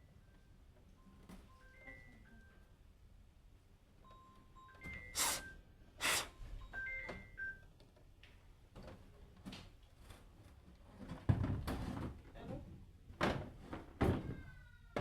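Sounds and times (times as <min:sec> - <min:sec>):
loud hissing bursts: 0:05.2 - 0:05.4, 0:06.0 - 0:06.3.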